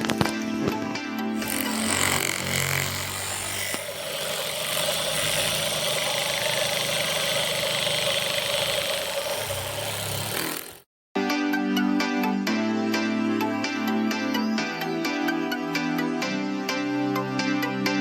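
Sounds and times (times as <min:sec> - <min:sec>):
small electric motor whine: 0:01.4 - 0:10.8.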